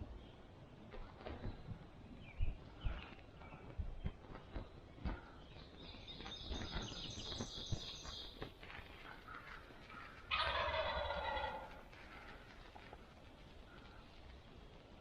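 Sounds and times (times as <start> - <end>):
turkey gobbling: 9.3 - 11.9.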